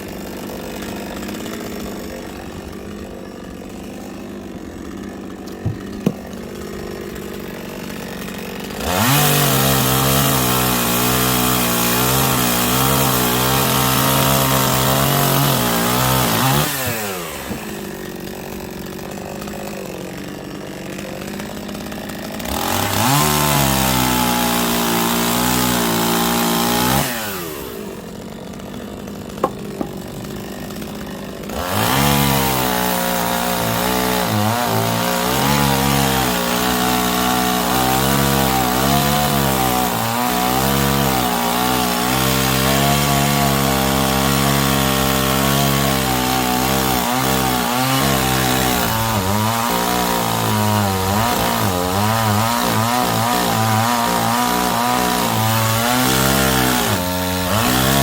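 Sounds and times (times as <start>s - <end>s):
chainsaw cutting wood: 0.0s - 58.0s
chainsaw click: 4.4s - 9.1s, 29.1s - 32.0s.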